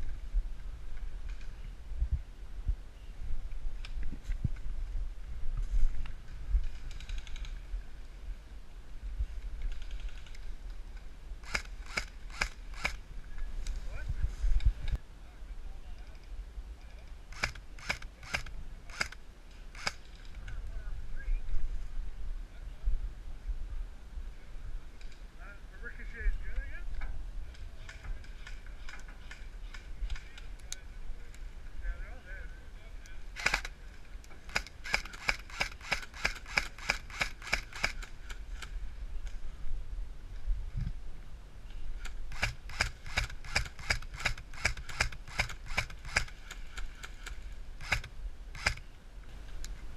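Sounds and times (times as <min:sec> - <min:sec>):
airsoft rifle shots: 0:11.4 - 0:13.0, 0:17.3 - 0:20.0, 0:33.4 - 0:33.8, 0:34.5 - 0:38.4, 0:42.3 - 0:48.8.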